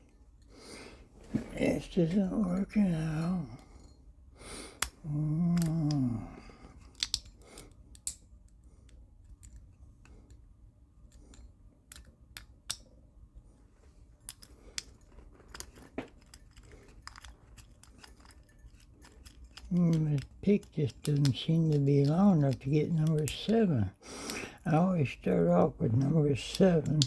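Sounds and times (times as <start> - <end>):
lock pick clicking on pins: 4.7 - 12.9, 14.2 - 27.0
person humming: 5.0 - 6.6.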